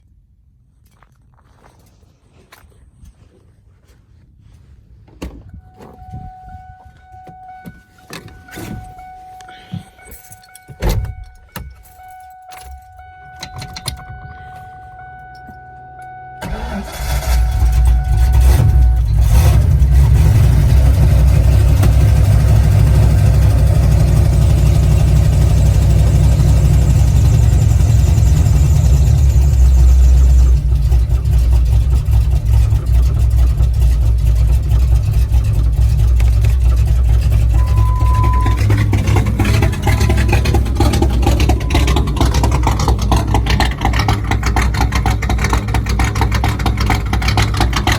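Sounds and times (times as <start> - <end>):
engine idling loudly: 17.5 - 47.9
steady electronic tone: 37.5 - 42.8.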